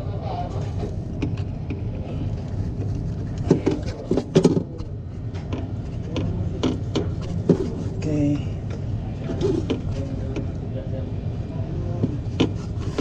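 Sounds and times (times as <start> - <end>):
low machinery hum: 0.0 - 13.0
sharp clicks and knocks: 1.1 - 1.9, 2.8 - 7.8, 12.0 - 13.0.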